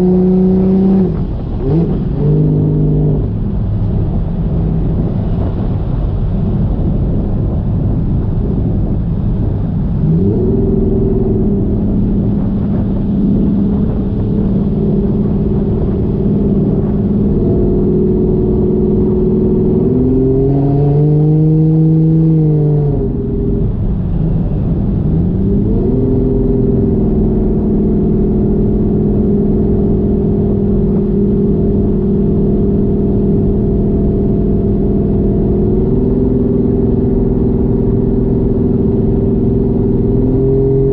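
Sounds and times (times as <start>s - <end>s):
turbocharged car engine cruising: 0.0s - 40.9s.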